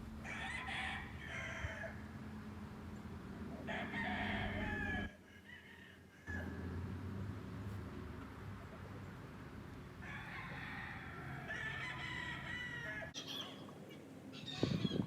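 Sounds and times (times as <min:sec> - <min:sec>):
rooster crowing: 0:00.2 - 0:02.4, 0:03.6 - 0:06.9, 0:10.0 - 0:13.2.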